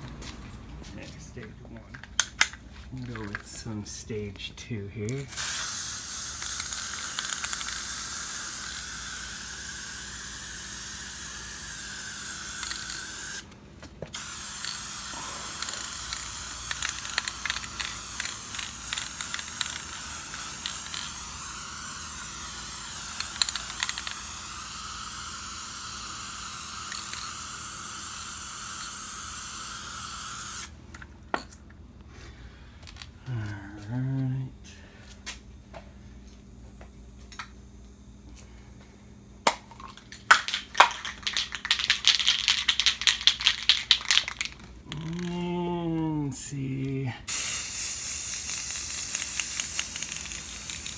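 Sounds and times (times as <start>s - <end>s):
spray paint can hissing: 5.1s - 13.5s, 14.1s - 30.7s, 40.3s - 45.4s, 47.3s - 50.9s.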